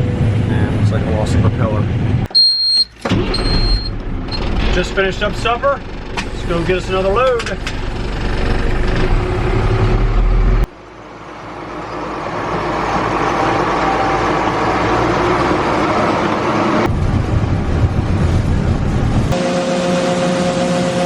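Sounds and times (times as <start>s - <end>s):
harvest machinery engine running: 2.3s - 13.4s, 14.4s - 21.0s.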